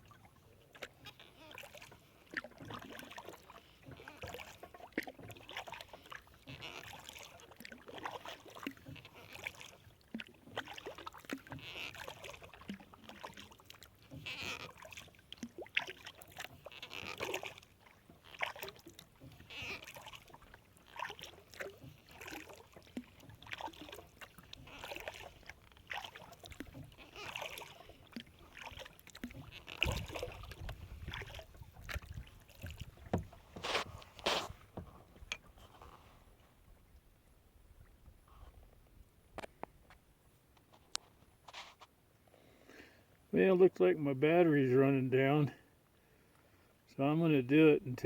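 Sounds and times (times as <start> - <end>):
paddle strokes in water: 0.0 - 48.0
water dripping and splashing: 0.2 - 35.4.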